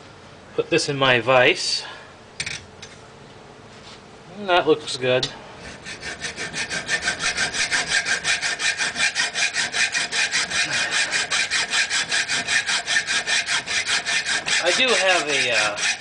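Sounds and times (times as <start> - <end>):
hacksaw cutting metal pipe: 5.6 - 16.0.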